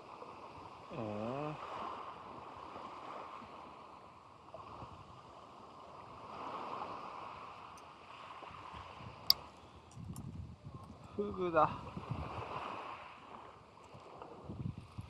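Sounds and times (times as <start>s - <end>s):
small waves washing on beach: 0.0s - 15.0s.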